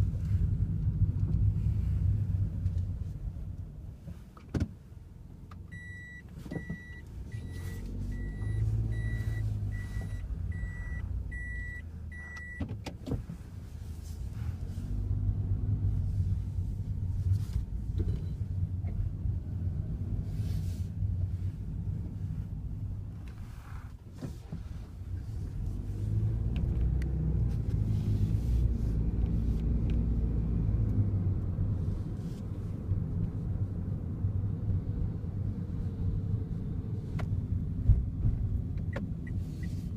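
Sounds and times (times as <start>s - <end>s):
car engine and road rumble: 0.0s - 39.9s
dashboard warning chime beeping: 5.7s - 12.6s.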